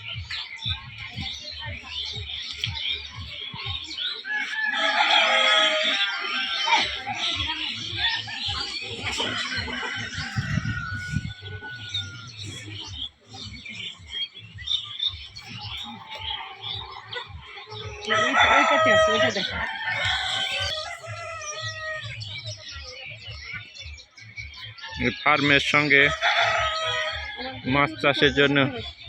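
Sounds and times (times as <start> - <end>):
chickens clucking: 0.0 - 29.0
rooster crowing: 4.2 - 7.1, 8.0 - 12.4, 18.1 - 22.1, 26.0 - 27.7.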